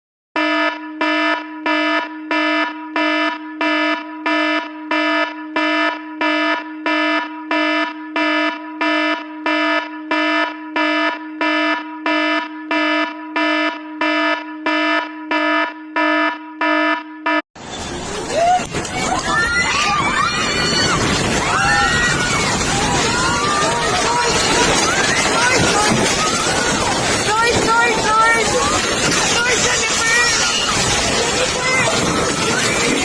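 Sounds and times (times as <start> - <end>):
pulsing emergency alert tone: 0.4 - 17.4, 20.6 - 33.0.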